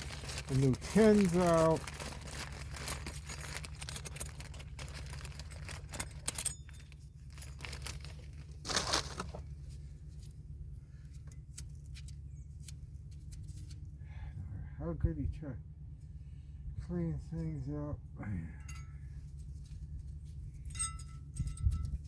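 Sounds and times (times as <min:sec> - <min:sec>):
packaging crinkling and tearing: 0:00.0 - 0:06.2, 0:07.3 - 0:09.4
short rustle: 0:00.0 - 0:10.3
steady low hum: 0:00.0 - 0:22.0.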